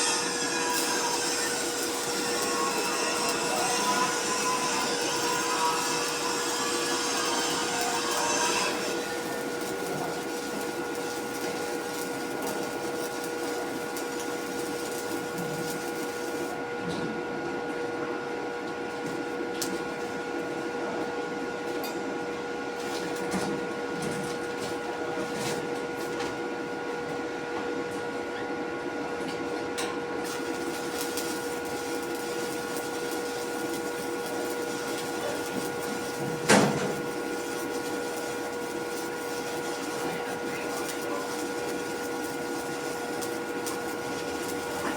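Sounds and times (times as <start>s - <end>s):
steady machine hum: 0.0s - 16.8s, 30.0s - 44.9s.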